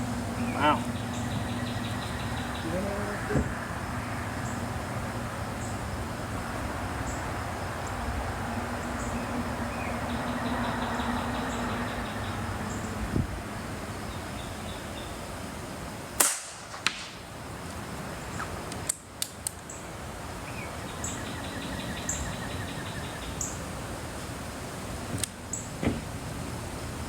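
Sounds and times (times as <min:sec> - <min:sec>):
outdoor background hiss: 0:00.0 - 0:27.0
air pistol shot: 0:16.2 - 0:17.2
small snap: 0:18.4 - 0:19.6.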